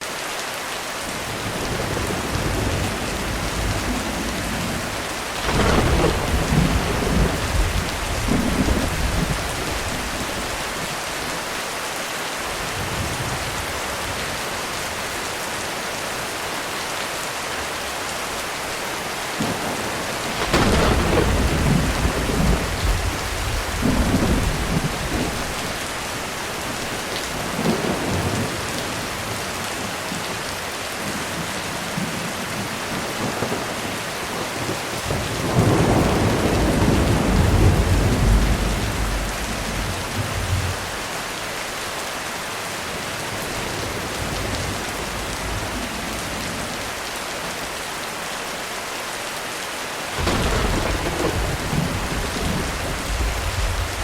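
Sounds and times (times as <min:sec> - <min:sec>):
heavy rain on a roof: 0:00.0 - 0:54.0
distant thunder rumbles: 0:01.3 - 0:10.9, 0:19.3 - 0:29.4, 0:34.3 - 0:41.0, 0:50.2 - 0:54.0
thunder cracks: 0:05.4 - 0:10.5, 0:19.4 - 0:25.6, 0:34.6 - 0:40.8, 0:50.2 - 0:54.0.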